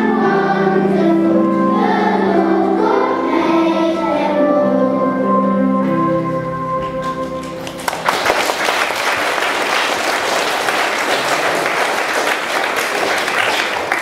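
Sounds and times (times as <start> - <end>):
song with accompaniment: 0.0 - 8.4
audience applause: 7.0 - 14.0.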